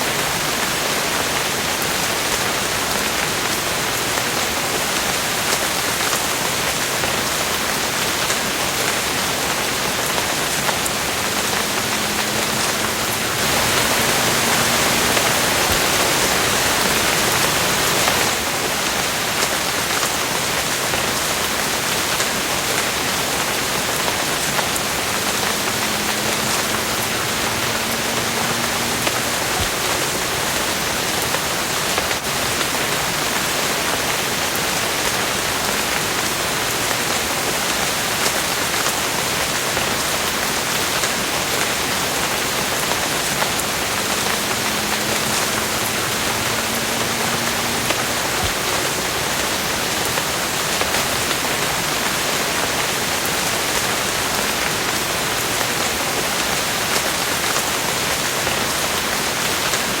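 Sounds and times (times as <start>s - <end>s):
steady rain falling: 0.0s - 60.0s
faint low hum rising in pitch: 43.4s - 49.6s.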